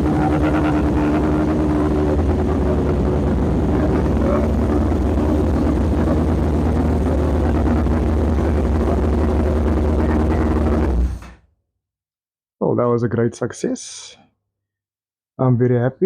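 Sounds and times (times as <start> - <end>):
motorcycle engine idling: 0.0 - 11.0.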